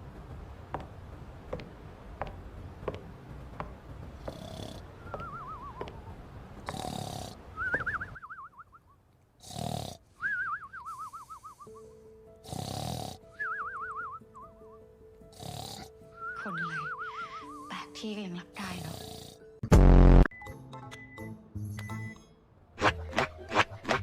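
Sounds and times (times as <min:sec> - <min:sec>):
soft regular ticks: 0:06.6 - 0:07.1
cartoon snoring with falling whistle: 0:09.4 - 0:14.2.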